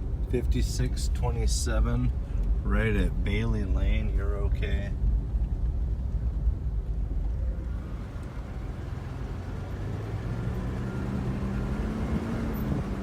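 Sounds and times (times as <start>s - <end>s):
car engine running: 0.0s - 13.0s
low road rumble: 0.0s - 13.0s.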